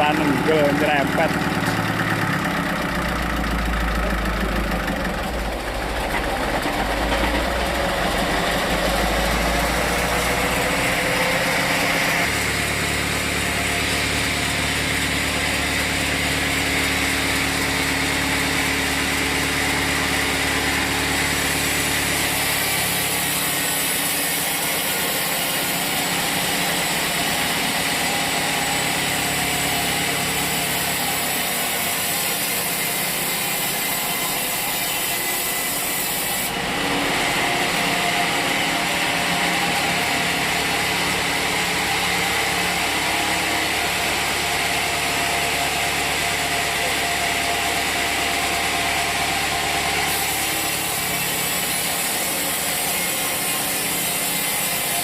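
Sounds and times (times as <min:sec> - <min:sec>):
sawmill engine hum: 0:00.0 - 0:55.0.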